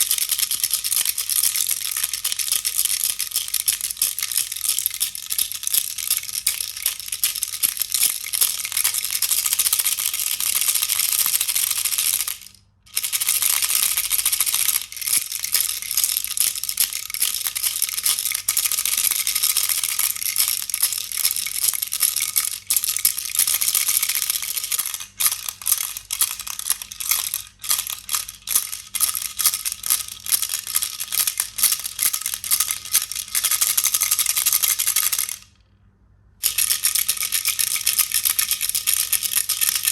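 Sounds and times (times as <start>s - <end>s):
baby rattle shaking: 0.0s - 35.5s, 36.4s - 39.9s.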